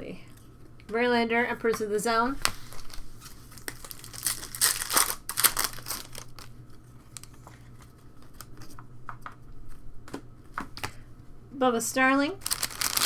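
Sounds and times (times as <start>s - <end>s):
foil wrapper crinkling: 2.1s - 8.8s, 12.4s - 13.0s
cards rustling and flicking: 2.2s - 6.5s, 12.4s - 13.0s.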